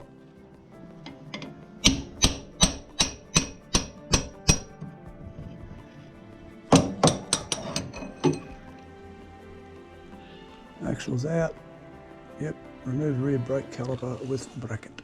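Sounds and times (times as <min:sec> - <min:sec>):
background music: 0:00.0 - 0:15.0
hammer striking steel axle: 0:01.4 - 0:04.7, 0:06.7 - 0:08.6.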